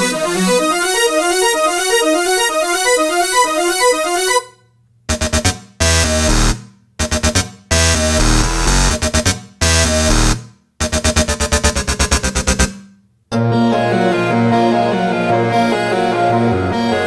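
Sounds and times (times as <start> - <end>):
synth repeating note pattern: 0.0 - 12.7
beat with heavy bass: 5.1 - 12.7.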